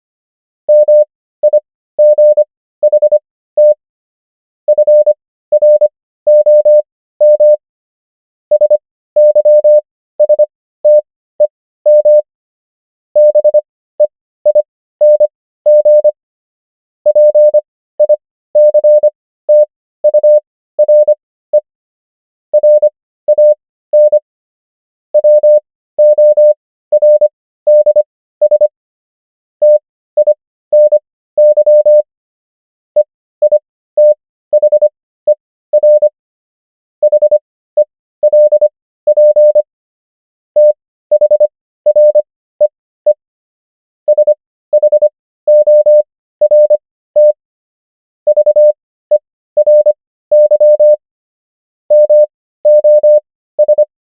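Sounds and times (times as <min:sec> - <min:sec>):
morse code beeps: 0:00.7 - 0:03.8, 0:04.7 - 0:07.6, 0:08.5 - 0:12.3, 0:13.2 - 0:16.2, 0:17.1 - 0:21.7, 0:22.6 - 0:24.2, 0:25.2 - 0:28.7, 0:29.6 - 0:32.1, 0:33.0 - 0:36.1, 0:37.0 - 0:39.7, 0:40.6 - 0:43.2, 0:44.1 - 0:47.4, 0:48.3 - 0:51.0, 0:51.9 - 0:53.9.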